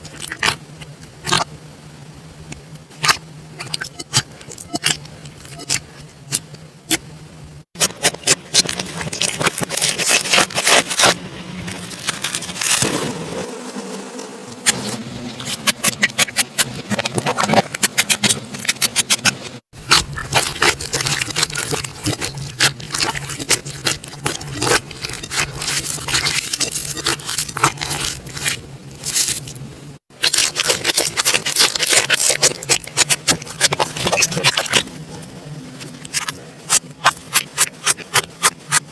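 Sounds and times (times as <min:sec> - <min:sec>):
slime crackling and popping: 0:07.8 - 0:13.1, 0:15.4 - 0:29.6, 0:30.2 - 0:34.9, 0:36.0 - 0:38.9.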